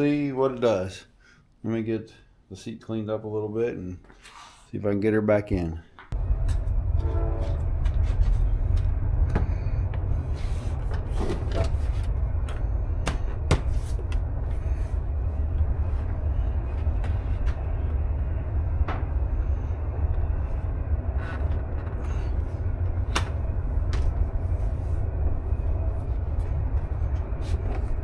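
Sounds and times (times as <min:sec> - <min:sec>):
steady low rumble: 0:06.1 - 0:28.0.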